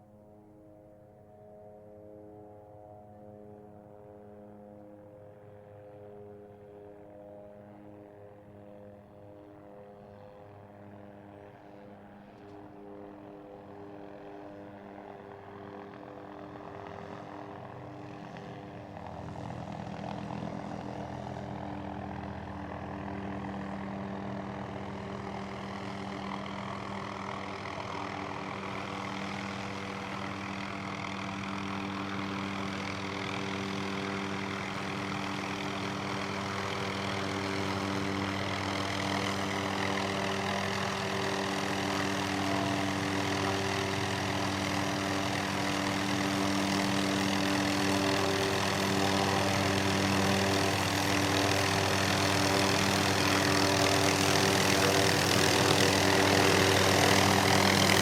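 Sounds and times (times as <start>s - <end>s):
helicopter engine: 4.8s - 58.0s
turbine and rotor rush: 13.6s - 58.0s.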